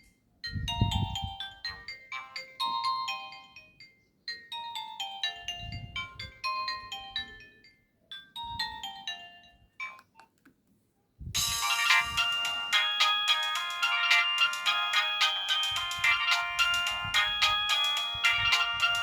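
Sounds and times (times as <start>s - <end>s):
mobile phone ringtone melody: 0.5s - 7.7s, 11.4s - 19.0s.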